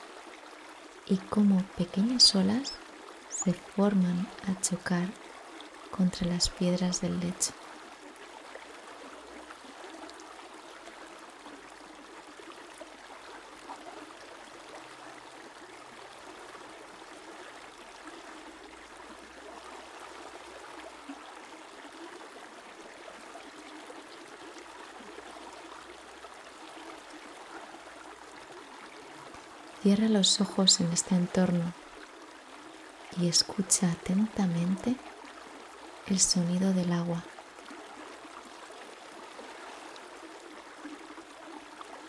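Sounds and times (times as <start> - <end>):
river flowing: 0.0 - 42.0.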